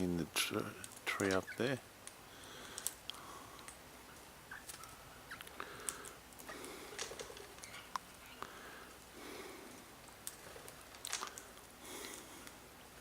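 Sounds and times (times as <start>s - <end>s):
faint bird chirps: 1.1s - 1.8s, 4.0s - 6.1s, 7.1s - 8.8s
small sharp clicks: 2.0s - 3.8s, 4.6s - 8.5s.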